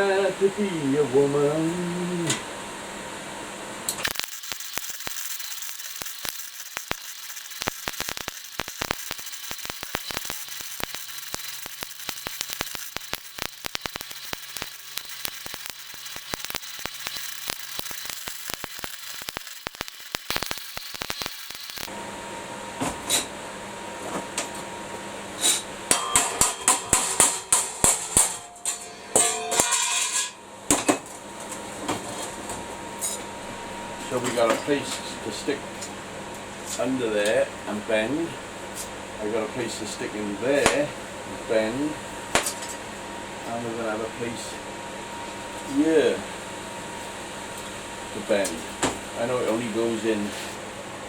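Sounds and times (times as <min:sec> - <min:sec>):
electric welder arcing crackle: 0:03.9 - 0:21.9.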